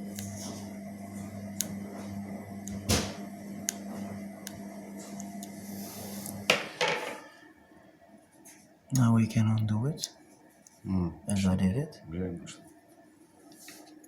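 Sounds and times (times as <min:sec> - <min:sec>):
small electric machine humming: 0:00.0 - 0:07.4.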